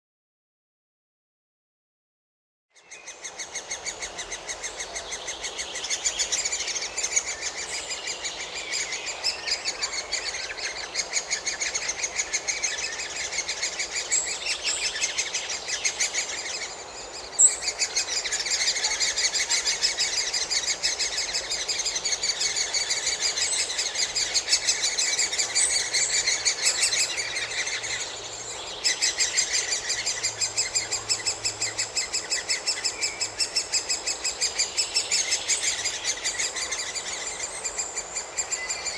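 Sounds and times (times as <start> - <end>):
woodpecker nestlings begging calls: 3.0 - 38.9.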